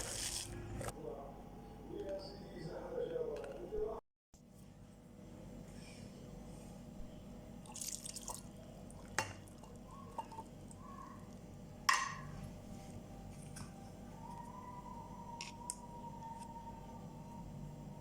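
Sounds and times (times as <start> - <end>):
liquid dripping and splashing: 7.6 - 9.8.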